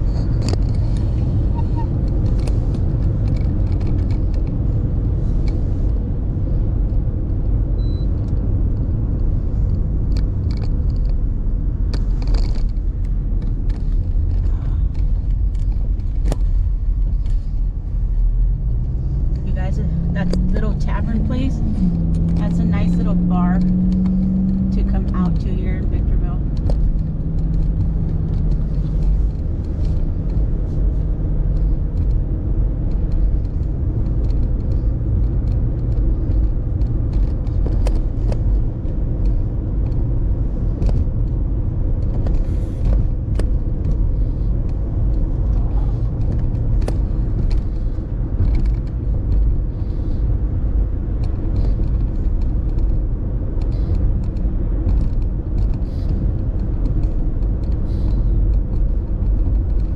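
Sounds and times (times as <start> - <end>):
car engine and tyre rumble: 0.0 - 59.9.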